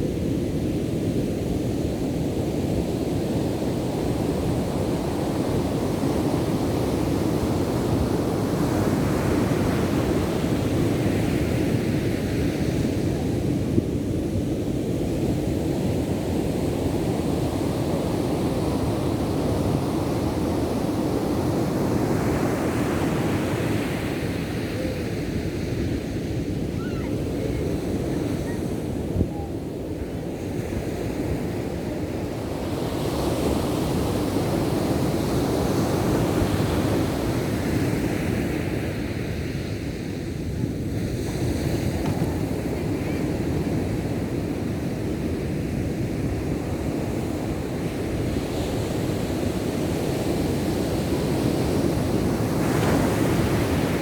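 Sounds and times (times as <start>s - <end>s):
wind buffeting microphone: 0.0s - 54.0s
ocean waves breaking: 40.3s - 45.0s, 50.8s - 54.0s.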